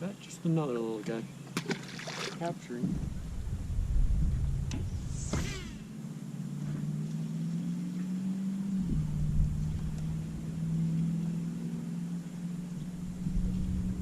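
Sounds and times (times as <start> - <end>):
small boat motor humming: 3.1 - 14.0.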